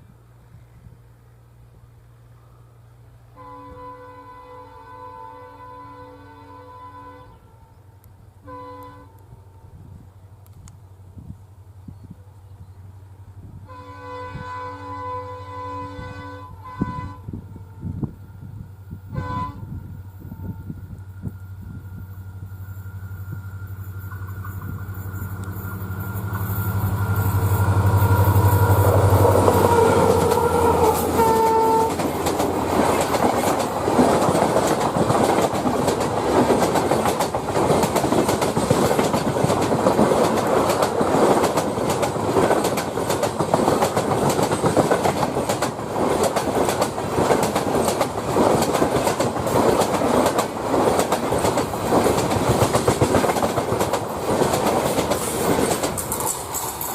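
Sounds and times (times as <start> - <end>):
diesel locomotive engine drone: 0.0 - 56.9
train horn: 3.3 - 10.0, 13.6 - 32.4
train wheels clacking over rail joints: 24.0 - 56.9.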